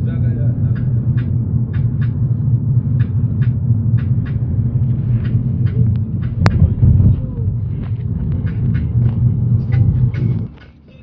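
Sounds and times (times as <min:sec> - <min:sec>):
car driving low rumble: 0:00.0 - 0:11.0
light repeated ticks: 0:03.0 - 0:06.7, 0:07.8 - 0:10.8.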